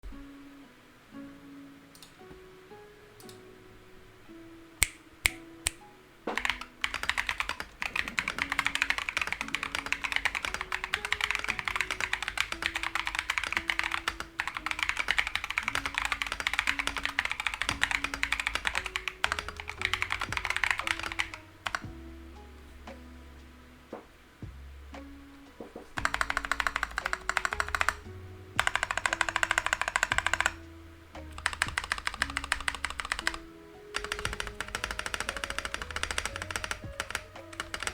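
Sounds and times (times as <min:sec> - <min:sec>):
fast typing on mechanical keyboard: 0:06.3 - 0:21.8, 0:26.0 - 0:28.0, 0:28.6 - 0:30.6, 0:31.2 - 0:37.9
mechanical keyboard key presses: 0:06.3 - 0:21.8, 0:26.0 - 0:28.0, 0:28.6 - 0:30.6, 0:31.3 - 0:33.4, 0:34.0 - 0:37.9.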